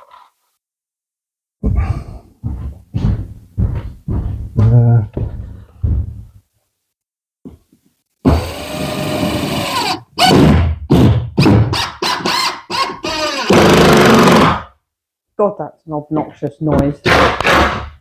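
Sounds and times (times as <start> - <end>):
loud squeaking: 11.4 - 14.4.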